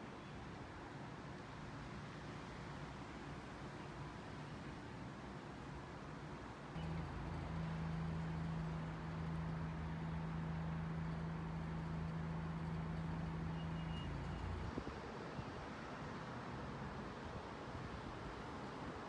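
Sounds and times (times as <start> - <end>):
low mechanical hum: 6.8 - 14.8.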